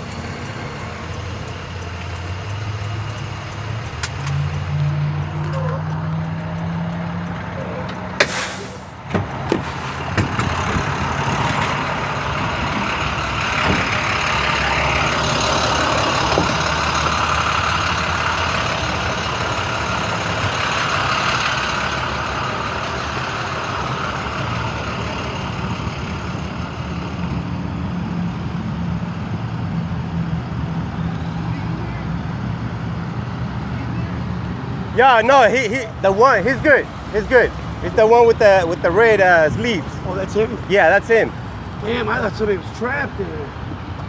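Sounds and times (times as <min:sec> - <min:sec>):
truck engine running: 0:00.0 - 0:44.0
hiss: 0:08.2 - 0:09.0.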